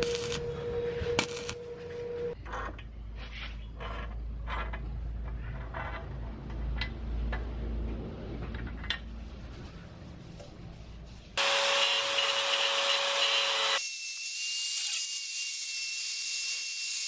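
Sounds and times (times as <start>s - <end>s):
low hum: 0.0s - 2.4s.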